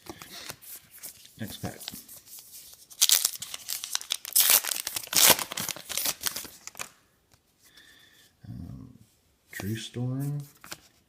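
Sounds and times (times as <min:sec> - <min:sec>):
plastic wrapper tearing and crinkling: 0:02.9 - 0:07.0.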